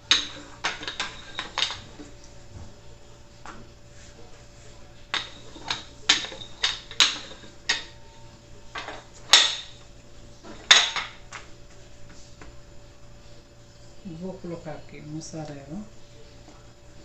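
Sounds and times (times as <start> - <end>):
utensils and dishes clattering: 0.0 - 2.7, 5.1 - 11.5.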